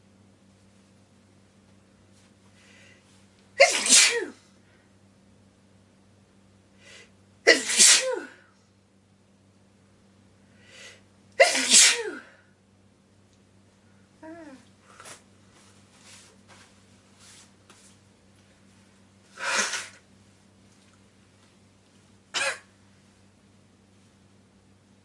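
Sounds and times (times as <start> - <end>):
person sneezing: 3.6 - 4.4, 7.5 - 8.5, 11.4 - 12.4, 19.4 - 20.0, 22.4 - 22.7
short noisy breath: 19.4 - 20.0.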